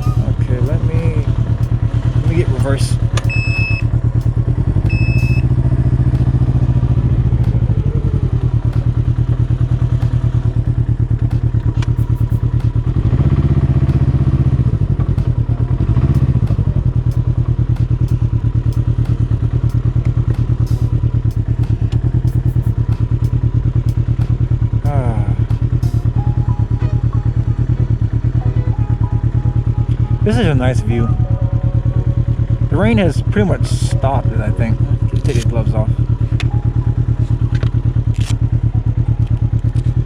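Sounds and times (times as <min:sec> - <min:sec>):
short electronic beep: 0:00.0 - 0:01.3, 0:03.2 - 0:03.9, 0:04.8 - 0:06.6, 0:25.9 - 0:32.8
trike engine running: 0:00.0 - 0:40.0.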